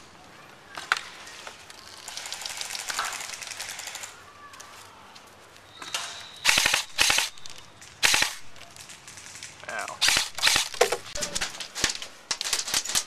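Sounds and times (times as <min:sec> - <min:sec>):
airsoft guns firing bursts: 0:02.0 - 0:04.1, 0:06.4 - 0:11.2.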